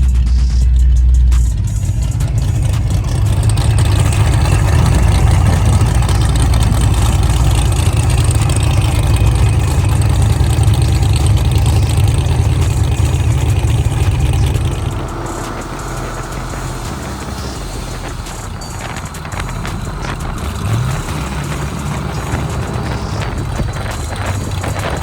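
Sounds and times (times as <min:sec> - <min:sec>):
race car engines rumbling: 0:00.0 - 0:25.0.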